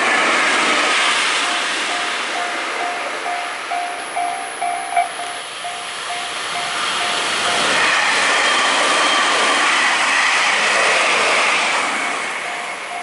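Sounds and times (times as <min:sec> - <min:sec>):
train passing: 0:00.0 - 0:13.0
crossing warning bell: 0:00.7 - 0:09.4, 0:12.4 - 0:13.0
high-pitched tones: 0:01.4 - 0:07.8.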